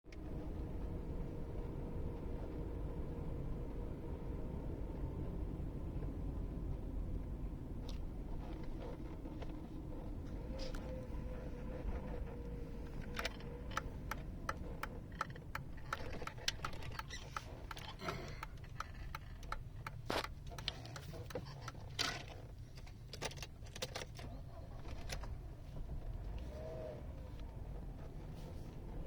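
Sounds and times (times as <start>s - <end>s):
engine clicks and ticks: 4.8s - 29.0s
car engine idling roughly: 7.9s - 22.7s.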